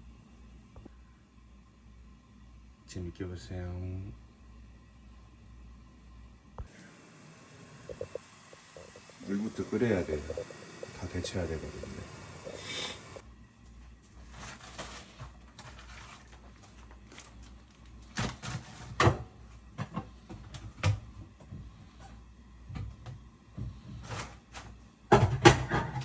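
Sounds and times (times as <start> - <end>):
low steady hum: 0.0 - 25.1
cupboards and cookware knocking: 25.1 - 26.0.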